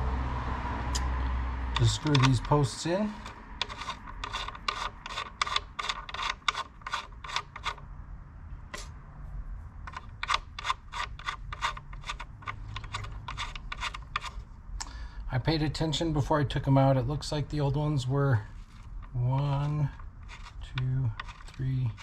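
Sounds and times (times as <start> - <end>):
metal threads scraping: 1.7 - 7.8, 9.8 - 14.5, 18.4 - 22.0.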